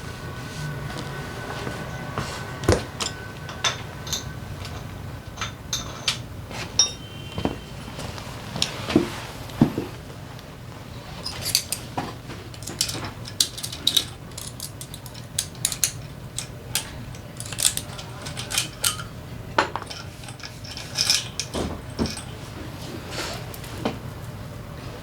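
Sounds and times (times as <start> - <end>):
steady low hum: 0.0 - 25.0
metal tools clinking: 2.7 - 7.6, 11.2 - 22.6.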